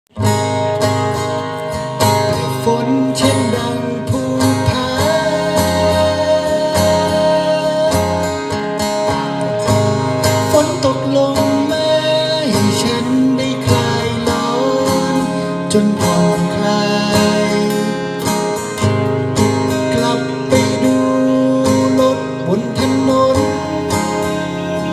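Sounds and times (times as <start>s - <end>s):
plucked acoustic guitar melody: 0.1s - 24.9s.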